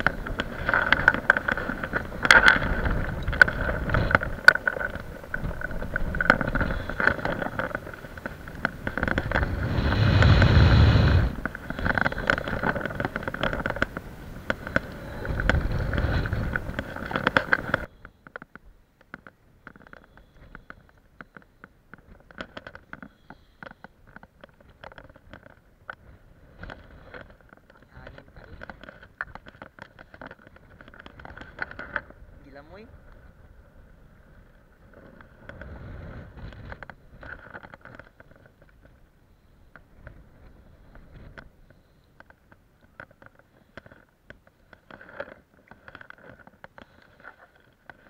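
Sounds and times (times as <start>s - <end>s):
deep rumble: 0.0s - 17.9s
wind buffeting microphone: 0.0s - 18.0s.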